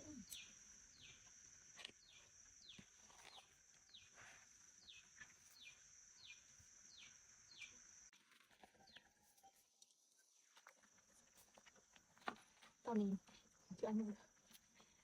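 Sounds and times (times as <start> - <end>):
bird chirping: 0.0 - 1.2.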